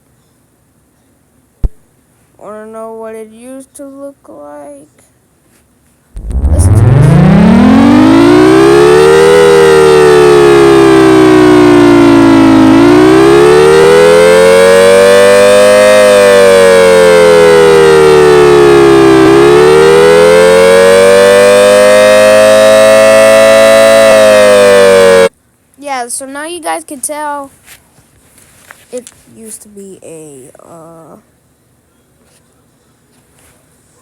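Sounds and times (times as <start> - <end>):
warning siren wailing: 6.2 - 25.3.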